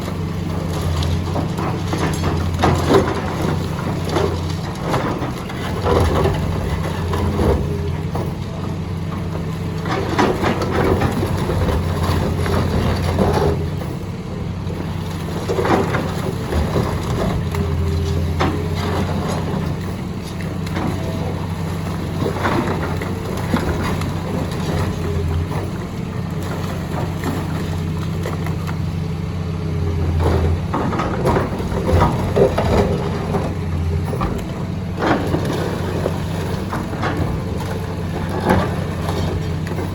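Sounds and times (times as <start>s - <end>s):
concrete crunching: 0.0s - 39.9s
diesel engine under load: 0.0s - 39.9s.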